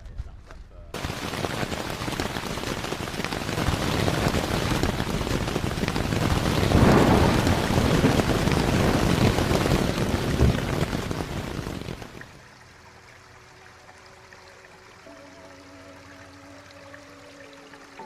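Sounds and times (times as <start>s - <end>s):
heavy rain pattering: 1.0s - 13.4s.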